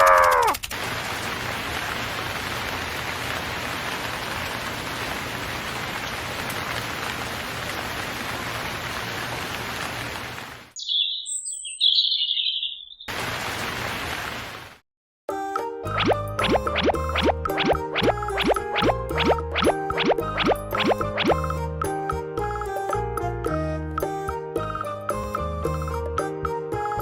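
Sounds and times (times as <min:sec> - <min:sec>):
rain-like hiss: 0:00.3 - 0:10.8, 0:13.1 - 0:14.8
high chirps: 0:10.8 - 0:13.1, 0:15.9 - 0:21.4.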